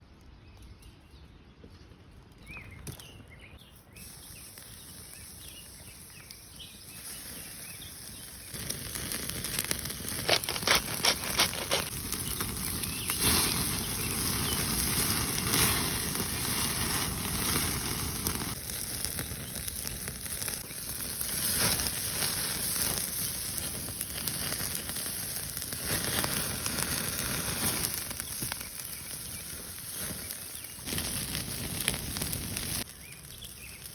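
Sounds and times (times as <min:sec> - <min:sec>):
faint bird chirps: 0:02.4 - 0:08.6
campfire crackling and popping: 0:04.0 - 0:33.9.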